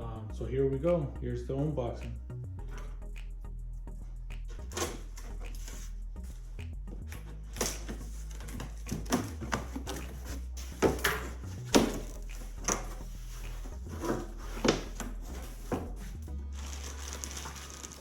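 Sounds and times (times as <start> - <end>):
cardboard boxes knocking and scraping: 7.6 - 16.0.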